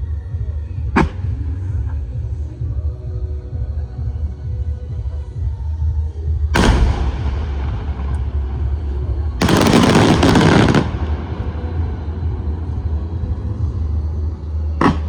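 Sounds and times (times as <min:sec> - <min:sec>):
low rumble: 0:06.5 - 0:15.0
crackling firework bangs: 0:06.6 - 0:13.4
firework bang: 0:06.6 - 0:13.4.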